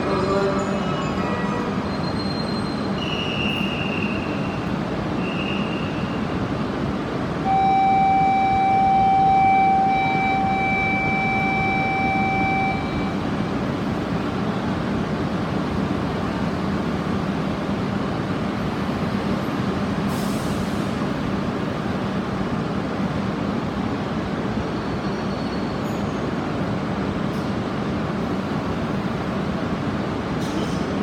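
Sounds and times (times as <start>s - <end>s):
train hum and rumble: 0.0s - 31.0s
steady electronic tone: 7.5s - 13.3s.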